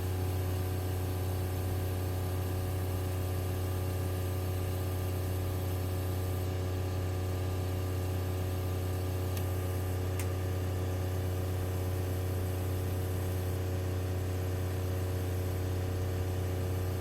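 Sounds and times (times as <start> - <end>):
test bench hum: 0.0 - 17.0.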